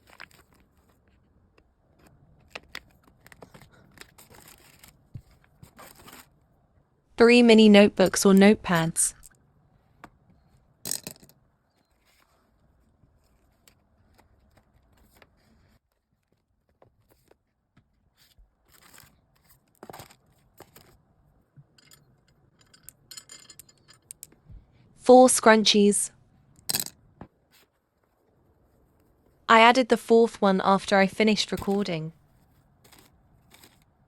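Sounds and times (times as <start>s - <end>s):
notepads being handled: 0.0s - 6.4s, 11.7s - 21.0s, 31.4s - 34.0s.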